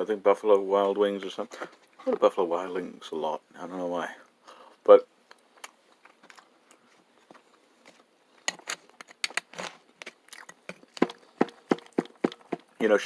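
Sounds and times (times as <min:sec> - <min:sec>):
chewing: 0:09.6 - 0:12.5.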